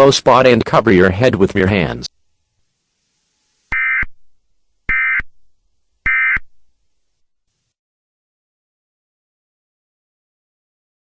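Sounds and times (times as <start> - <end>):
electronic data tones: 3.7 - 4.2, 4.9 - 5.3, 6.0 - 6.5.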